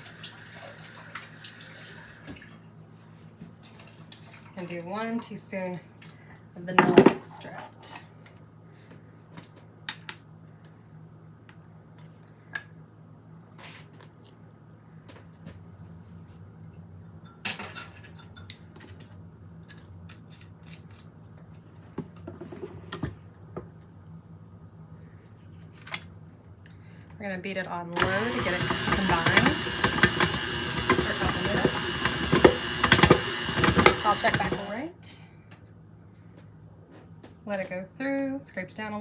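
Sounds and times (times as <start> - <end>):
utensils clicking and knocking: 28.0 - 34.8.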